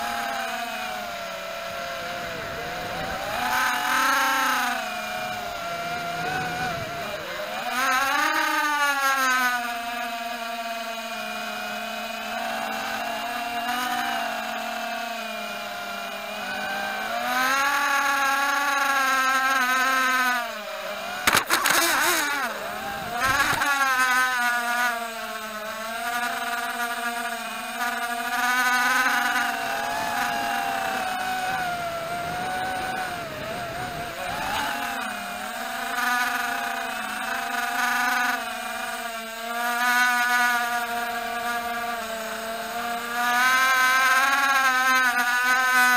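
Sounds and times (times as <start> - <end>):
quadcopter motors whining: 0.0 - 45.9
sharp clicks: 21.2 - 22.3.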